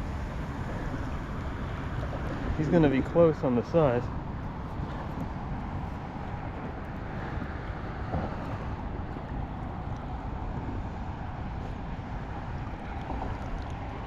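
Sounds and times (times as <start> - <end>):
wind rumbling on microphone: 0.0 - 14.0.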